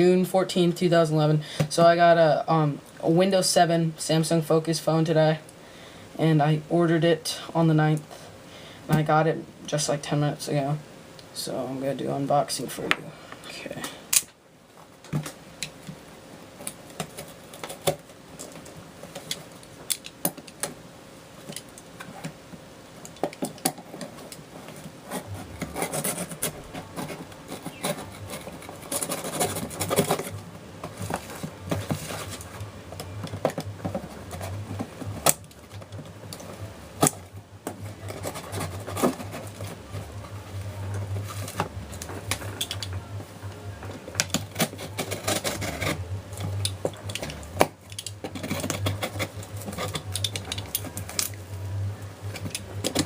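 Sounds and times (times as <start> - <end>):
low steady hum: 0.0 - 53.0
cardboard and tape tearing: 25.1 - 36.0, 37.0 - 40.2, 44.1 - 51.4.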